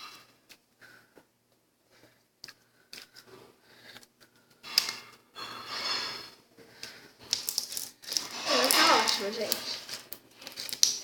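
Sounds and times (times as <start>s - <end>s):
slime squishing and crackling: 5.8s - 11.0s
slime popping: 6.8s - 11.0s.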